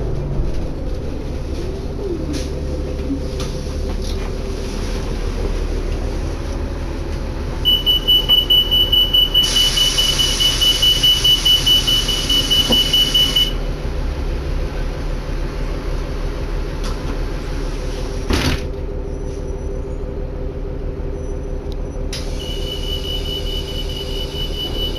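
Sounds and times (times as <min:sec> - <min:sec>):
bus engine hum: 0:00.0 - 0:24.9
electronic warning beeper: 0:07.6 - 0:13.6, 0:22.3 - 0:24.9.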